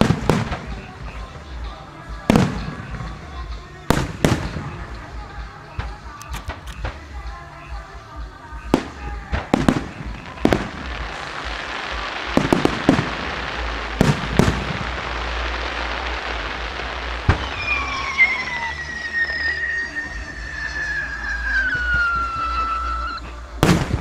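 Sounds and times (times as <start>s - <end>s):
crackle of burning stars: 0.0s - 24.0s
firework booms: 0.0s - 24.0s
falling firework whistle: 8.5s - 24.0s.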